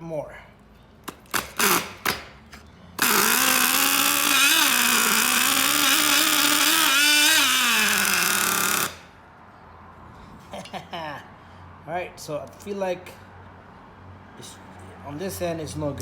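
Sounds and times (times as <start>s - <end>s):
model nitro engine buzzing: 3.0s - 9.1s.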